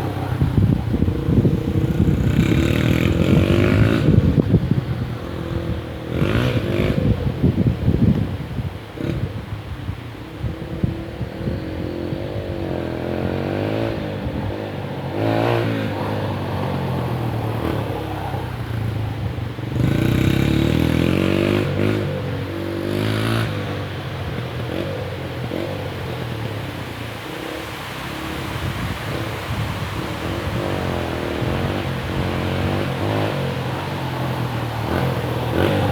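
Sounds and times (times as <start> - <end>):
dirt bike engine revving: 0.0 - 4.4, 27.5 - 35.9.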